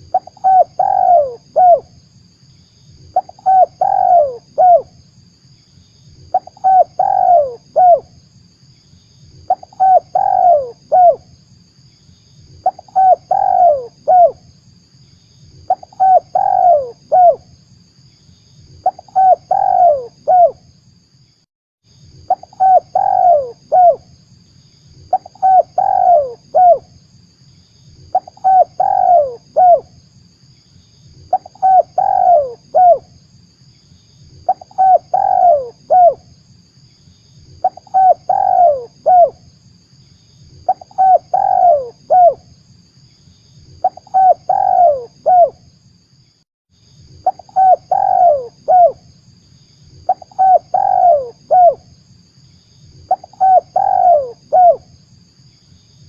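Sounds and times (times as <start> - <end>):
dove cooing: 0.0 - 1.8, 3.2 - 4.9, 6.3 - 8.1, 9.5 - 11.2, 12.6 - 14.4, 15.7 - 17.4, 18.8 - 20.6, 22.3 - 24.0, 25.1 - 26.8, 28.1 - 29.9, 31.3 - 33.1, 34.4 - 36.2, 37.6 - 39.4, 40.7 - 42.4, 43.8 - 45.6, 47.2 - 49.0, 50.1 - 51.8, 53.1 - 54.8.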